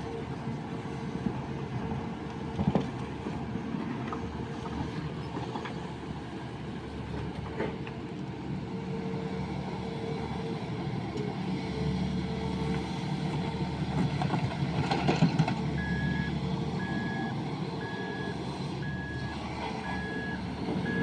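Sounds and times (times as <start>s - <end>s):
excavator diesel engine running: 9.7s - 21.0s.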